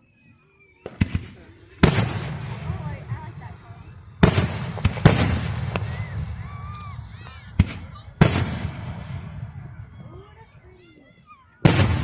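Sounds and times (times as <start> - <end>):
firework shells bursting: 0.8 - 10.2, 11.6 - 12.0.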